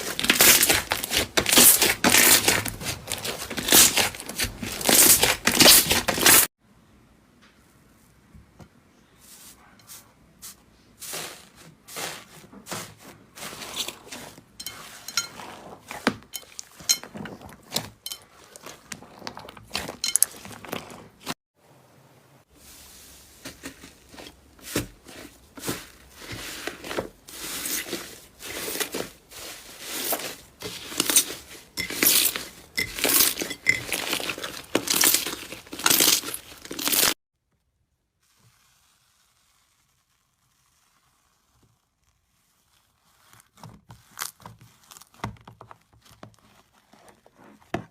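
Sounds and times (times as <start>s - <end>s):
slime crackling and popping: 38.2s - 47.1s.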